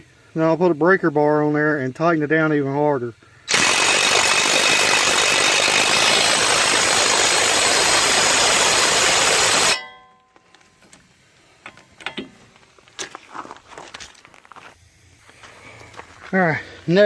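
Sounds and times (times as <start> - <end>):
impact wrench rattling: 3.5 - 9.8
metallic ring: 9.7 - 10.8.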